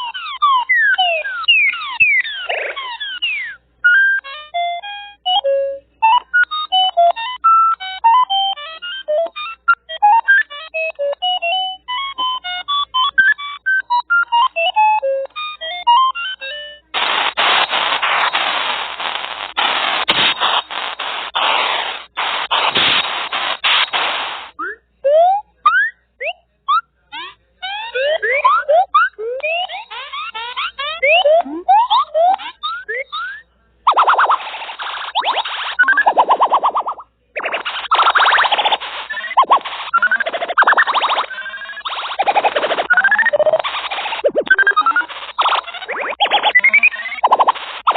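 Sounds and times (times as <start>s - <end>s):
electronic beeps: 0.0s - 47.9s
static hiss burst: 17.0s - 24.6s, 33.9s - 47.9s.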